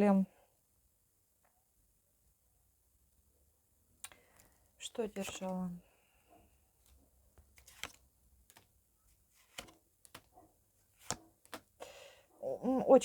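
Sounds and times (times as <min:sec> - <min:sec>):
faint clicks and taps: 0:06.8 - 0:08.7.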